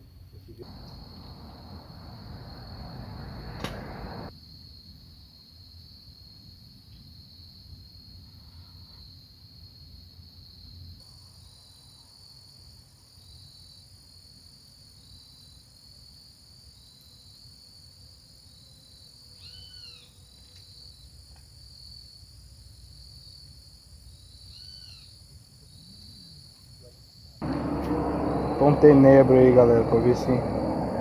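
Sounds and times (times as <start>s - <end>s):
insects chirping: 0.6s - 4.8s, 14.9s - 31.0s
faint low rumble: 27.4s - 31.0s.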